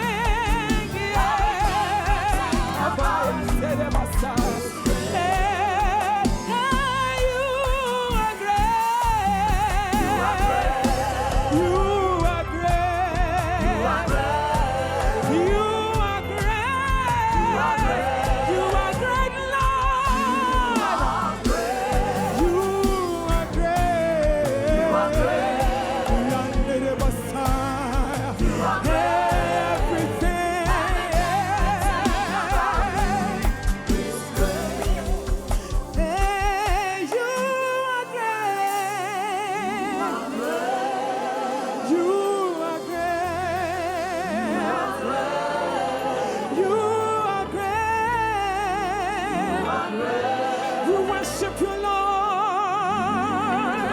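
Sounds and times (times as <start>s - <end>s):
band with steady low beat: 0.0s - 37.1s
person singing with vibrato: 0.0s - 53.9s.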